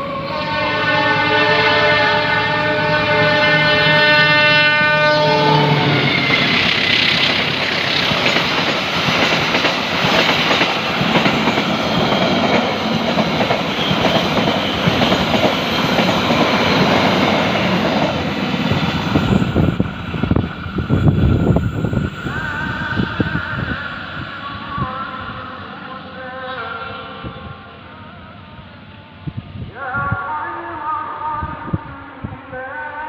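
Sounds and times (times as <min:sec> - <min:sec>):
train horn: 0:00.0 - 0:07.3, 0:22.2 - 0:29.1
train wheels rolling on rail: 0:03.8 - 0:26.3.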